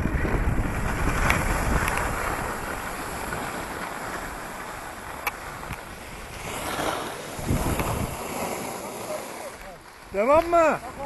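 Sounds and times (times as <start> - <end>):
wind buffeting microphone: 0.0 - 8.8.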